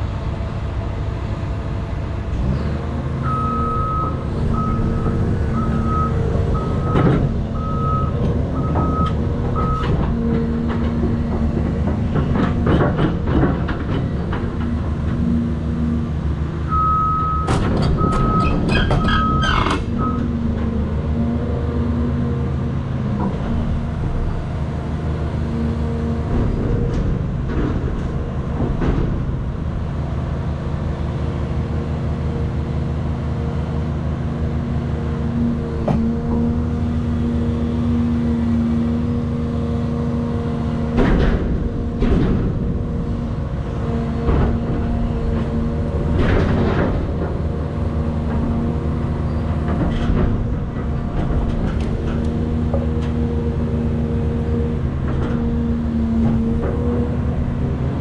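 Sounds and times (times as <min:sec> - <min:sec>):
excavator diesel engine running: 0:00.0 - 0:58.0.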